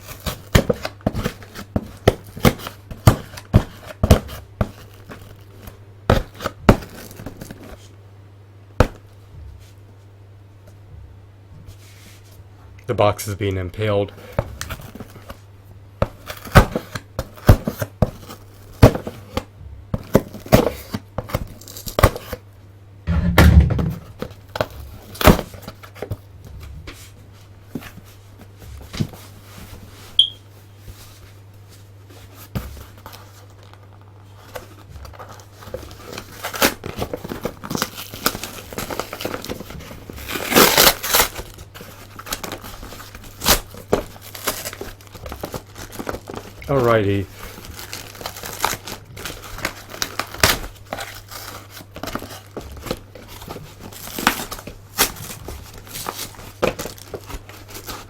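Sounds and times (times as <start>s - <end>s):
cardboard tearing and crinkling: 0.0s - 7.9s, 14.2s - 15.4s, 16.0s - 22.4s, 23.6s - 26.2s, 32.2s - 58.0s
heavy thump: 23.1s - 24.3s.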